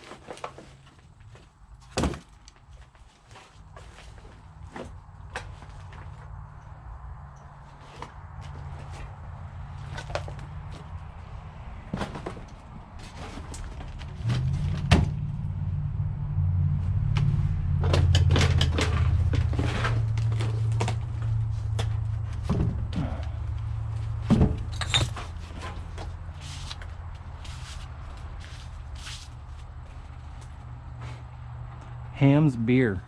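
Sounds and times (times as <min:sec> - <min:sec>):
knocks and clatter: 0:11.8 - 0:15.3, 0:17.1 - 0:26.2
low rumble: 0:13.8 - 0:27.4.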